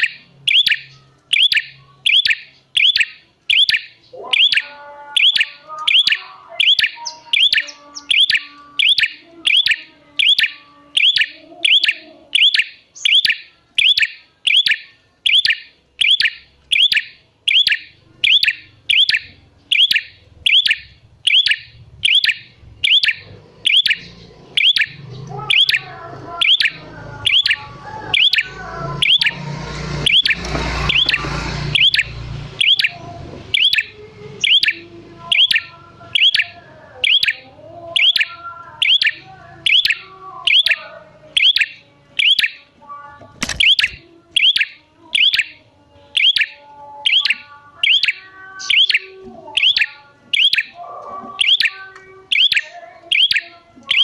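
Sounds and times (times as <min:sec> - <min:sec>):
bird repeating sharp chirp: 0:00.0 - 0:25.8, 0:43.4 - 0:45.6.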